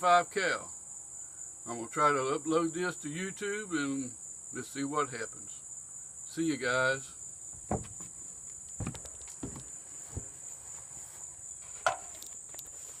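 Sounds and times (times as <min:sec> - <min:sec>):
crickets chirring: 0:00.0 - 0:13.0
short thumps: 0:07.5 - 0:10.8.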